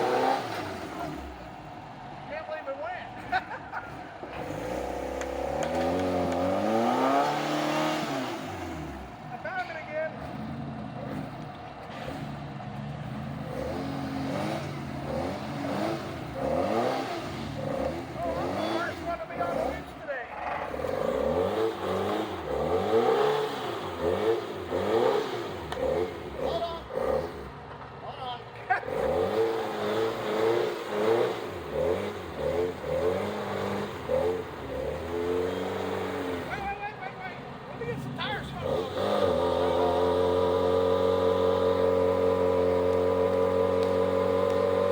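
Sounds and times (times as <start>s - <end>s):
off-road vehicle engine revving: 0.0s - 44.9s.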